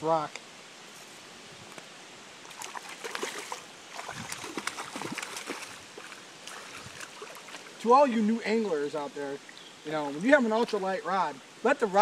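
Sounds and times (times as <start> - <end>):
water splashing and sloshing: 2.4 - 7.9.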